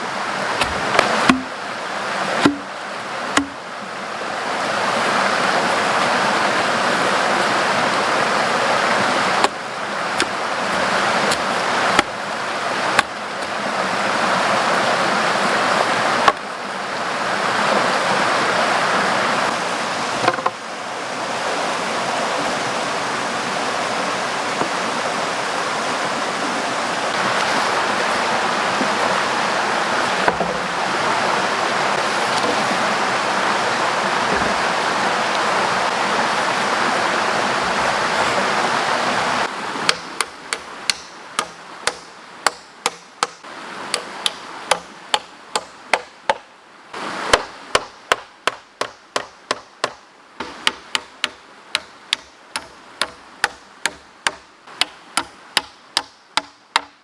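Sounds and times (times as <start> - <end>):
river water rushing: 0.0 - 56.8
sharp strikes: 1.0 - 1.6, 2.4 - 2.7.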